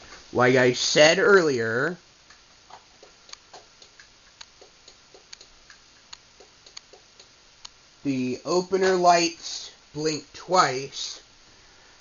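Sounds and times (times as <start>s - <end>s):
faint light clicks: 2.3s - 7.8s.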